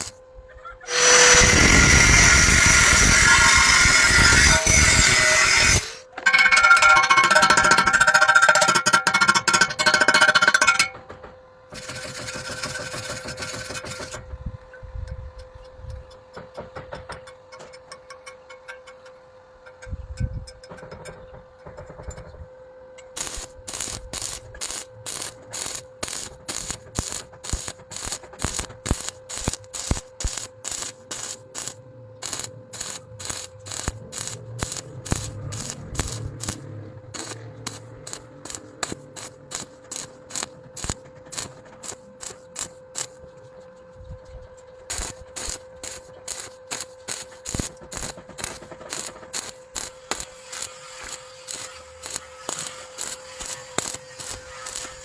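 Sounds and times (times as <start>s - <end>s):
steady hum: 0.0s - 16.0s, 22.4s - 55.0s
rhythmic scraping strokes: 0.9s - 11.0s, 11.8s - 14.2s, 23.2s - 44.1s, 44.9s - 55.0s.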